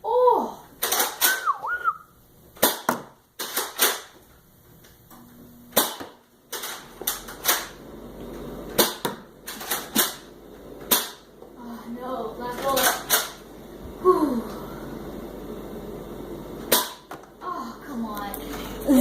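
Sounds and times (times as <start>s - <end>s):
toy blaster pops and clacks: 0.8s - 1.6s, 2.6s - 4.1s
darts striking targets: 2.6s - 4.2s, 5.7s - 7.8s, 8.7s - 11.3s, 16.7s - 17.3s.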